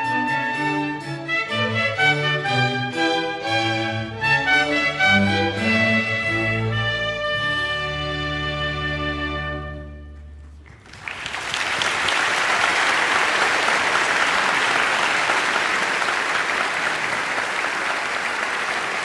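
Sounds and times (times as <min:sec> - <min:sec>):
audience applause: 0:10.6 - 0:19.0.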